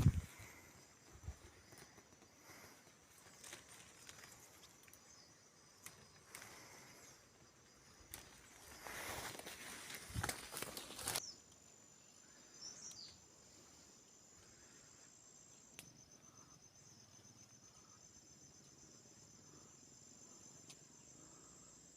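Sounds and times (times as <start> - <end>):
insects trilling: 0.0 - 21.9
rustling: 8.1 - 11.2.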